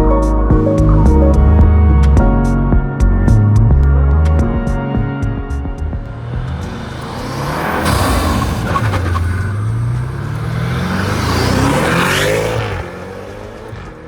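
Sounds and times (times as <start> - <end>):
road and wind noise: 3.6 - 14.0
car engine accelerating: 5.2 - 14.0.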